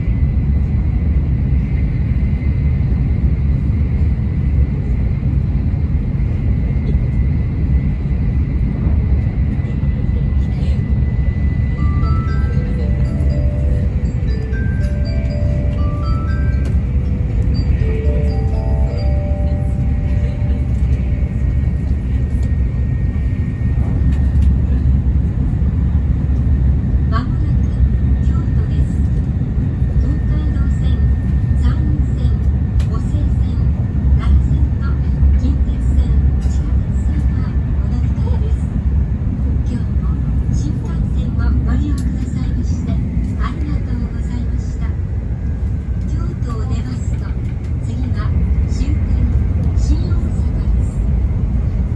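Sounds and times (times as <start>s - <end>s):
train running low rumble: 0.0s - 51.9s
in-car chime: 11.8s - 21.2s.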